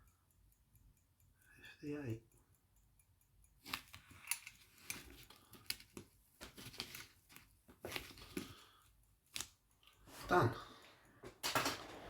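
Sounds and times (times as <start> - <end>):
pocket watch metallic clicks: 0.0 - 7.4.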